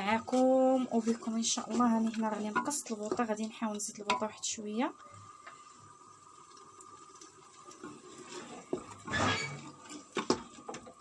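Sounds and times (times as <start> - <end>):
metal scraping: 8.4 - 10.1.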